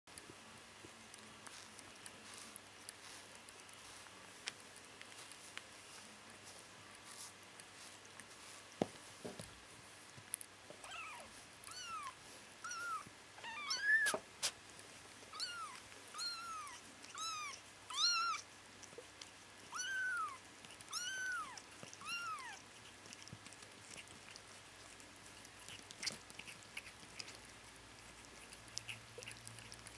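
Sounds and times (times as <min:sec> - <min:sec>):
kitten mewing: 0:10.8 - 0:14.6, 0:19.7 - 0:22.6.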